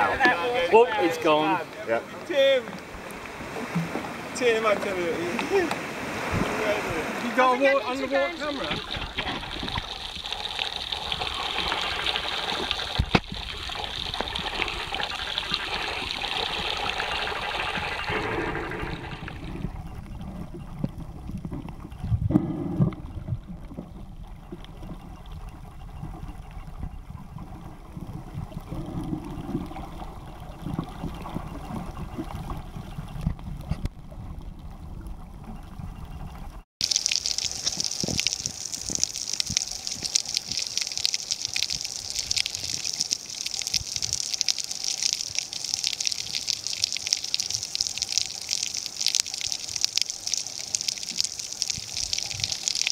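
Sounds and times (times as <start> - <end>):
low rumbling water wash: 2.2 - 52.9
high hiss of water: 3.4 - 19.6, 36.8 - 52.9.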